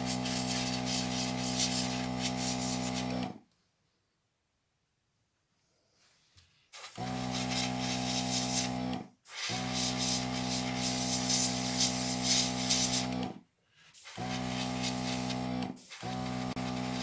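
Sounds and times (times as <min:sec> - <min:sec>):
airbrush spraying hiss: 0:00.0 - 0:03.1, 0:06.8 - 0:13.1, 0:14.0 - 0:17.0
small compressor motor hum: 0:00.0 - 0:03.4, 0:06.8 - 0:13.4, 0:14.0 - 0:17.0.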